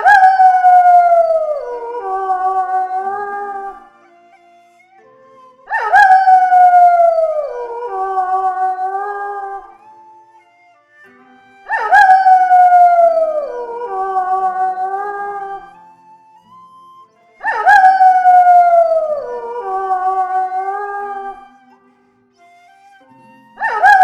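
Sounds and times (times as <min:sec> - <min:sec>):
wolves howling in chorus: 0:00.0 - 0:03.8, 0:05.7 - 0:09.8, 0:11.7 - 0:15.8, 0:17.4 - 0:21.5, 0:23.6 - 0:24.0.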